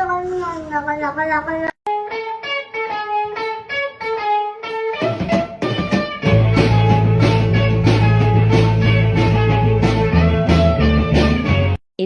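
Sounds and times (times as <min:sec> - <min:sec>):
picked guitar figure: 0:01.9 - 0:11.8
band with drums: 0:04.6 - 0:11.8
heavy bass: 0:06.2 - 0:11.8.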